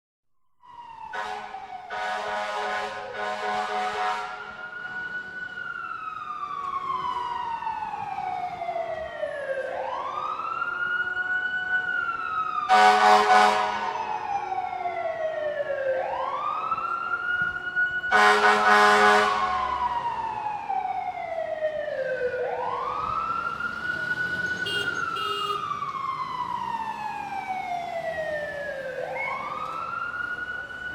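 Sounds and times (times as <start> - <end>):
fire truck siren wailing: 0.6 - 30.9
loud horn blast: 1.1 - 4.6, 12.7 - 14.1, 18.1 - 19.8, 24.6 - 25.7.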